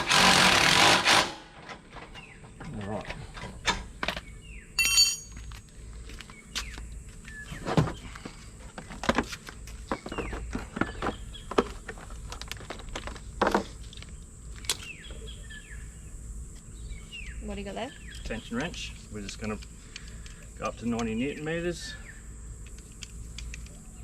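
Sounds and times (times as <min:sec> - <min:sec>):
ringing metal clink: 0:04.8 - 0:05.4.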